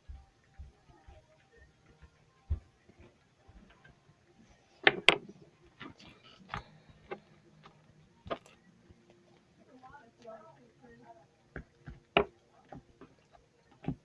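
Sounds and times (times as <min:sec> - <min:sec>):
small objects clicking and tapping: 0:04.8 - 0:09.2, 0:11.5 - 0:14.0.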